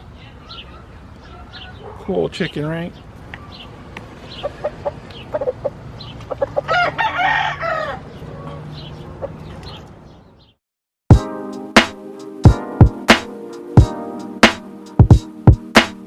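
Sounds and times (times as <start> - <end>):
rooster crowing: 1.3 - 1.8, 6.6 - 8.1
chickens clucking and peeping: 4.3 - 9.9
music with hard drum beat: 11.1 - 16.0.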